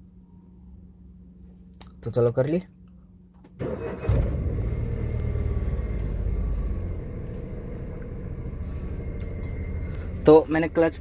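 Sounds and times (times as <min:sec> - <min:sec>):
car engine idling: 0:03.6 - 0:11.0.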